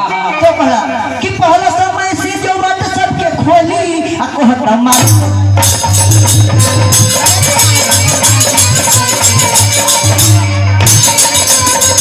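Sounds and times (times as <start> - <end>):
folk music with voice: 0.0 - 12.0
jingling tambourine: 5.0 - 12.0.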